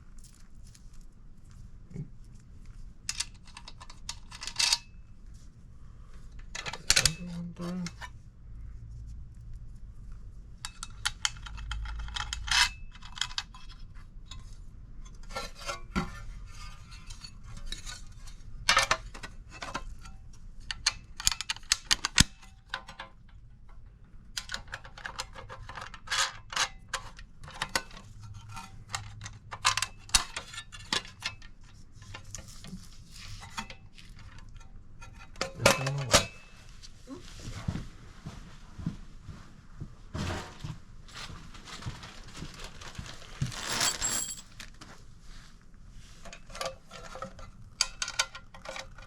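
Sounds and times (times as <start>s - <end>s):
metal parts clinking: 43.4s - 44.7s.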